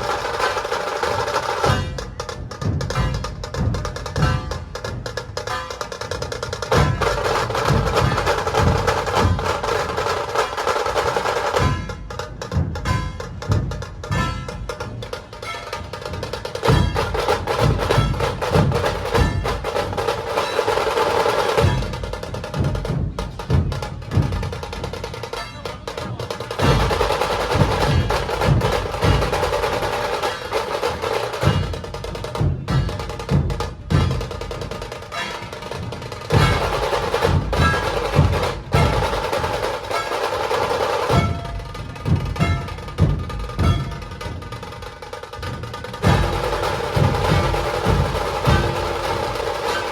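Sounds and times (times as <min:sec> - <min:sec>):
rapid snare drum roll: 0:00.0 - 0:49.9
deep drum strokes: 0:16.0 - 0:35.2, 0:35.8 - 0:49.9.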